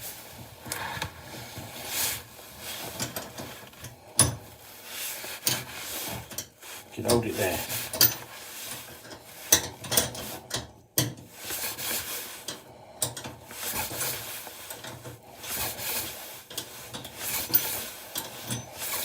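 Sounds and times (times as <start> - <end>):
rubbing and scraping: 4.6 - 10.5, 13.5 - 19.0.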